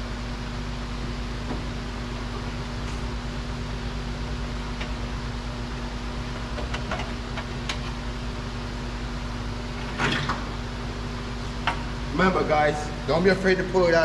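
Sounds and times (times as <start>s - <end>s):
steady mechanical hum: 0.0s - 14.0s.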